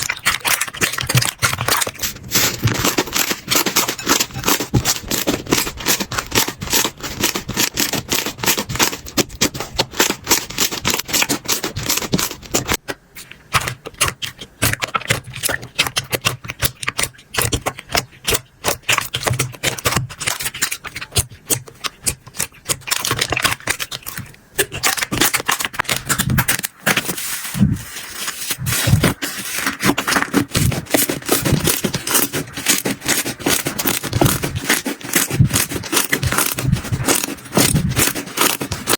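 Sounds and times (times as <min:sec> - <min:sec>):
slime crackling and popping: 0:13.4 - 0:38.9.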